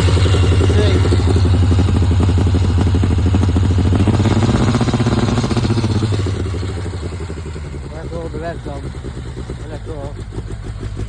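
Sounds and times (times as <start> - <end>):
engine running on held throttle: 0.0 - 11.0.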